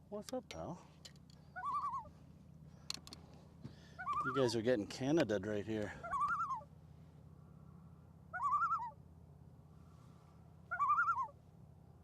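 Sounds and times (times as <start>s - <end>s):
loon wavering call: 1.5s - 2.2s, 3.9s - 4.6s, 6.0s - 6.7s, 8.3s - 9.0s, 10.7s - 11.4s.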